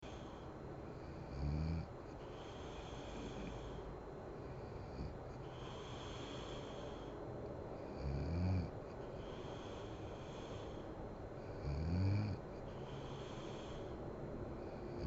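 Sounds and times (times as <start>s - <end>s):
quiet breathing: 0.0s - 15.0s
woman snoring: 1.0s - 3.8s, 7.8s - 10.8s, 11.4s - 13.9s.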